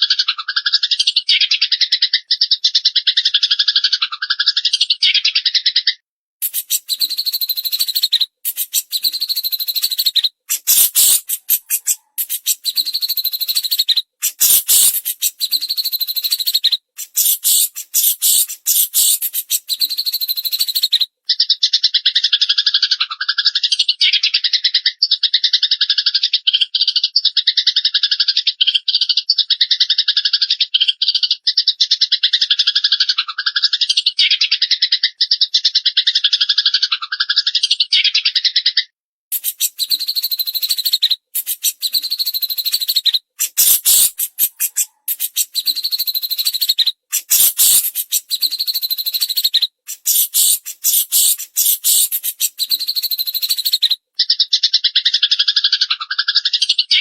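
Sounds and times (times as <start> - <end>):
buzzy bird trill: 6.4 - 21.1, 39.3 - 54.0
birds chattering: 6.4 - 21.6, 39.3 - 54.5.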